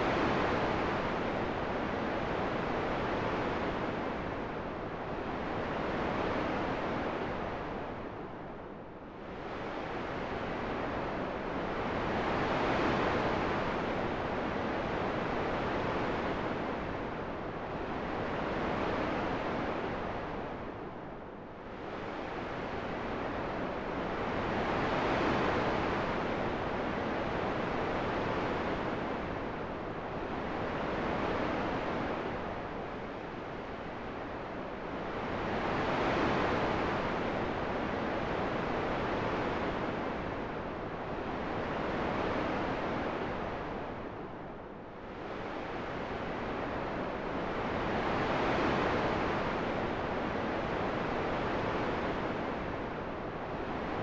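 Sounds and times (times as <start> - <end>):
gusting wind: 17.6 - 37.7.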